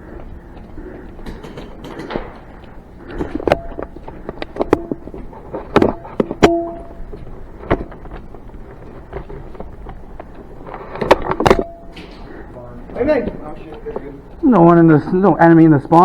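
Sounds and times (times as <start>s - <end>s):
bb impacts ringing: 3.5s - 4.0s, 4.6s - 8.0s, 11.4s - 12.3s.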